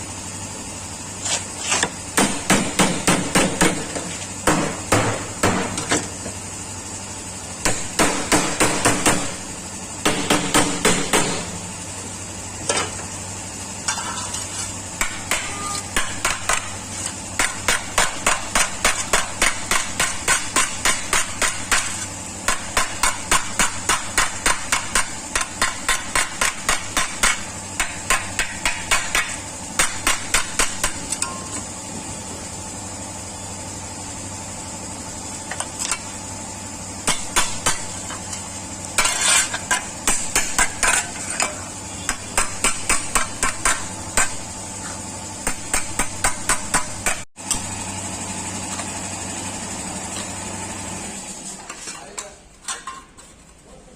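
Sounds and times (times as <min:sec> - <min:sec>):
hammer beating sheet metal: 0:02.2 - 0:06.0, 0:07.6 - 0:09.4, 0:10.0 - 0:11.6, 0:17.4 - 0:31.4, 0:39.7 - 0:41.1, 0:42.1 - 0:44.4.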